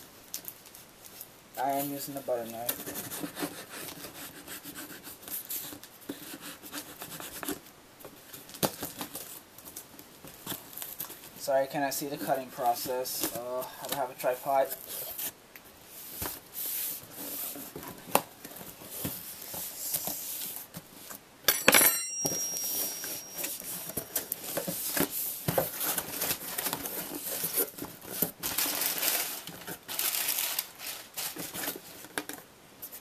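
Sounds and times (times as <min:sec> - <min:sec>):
packing ripping and crinkling: 0:25.8 - 0:31.8.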